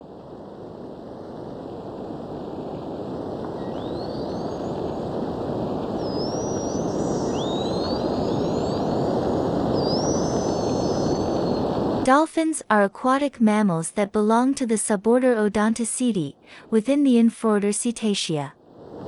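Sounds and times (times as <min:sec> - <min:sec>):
steady rushing noise: 0:00.0 - 0:12.1
dolphin whistles: 0:03.6 - 0:04.8, 0:06.0 - 0:12.0.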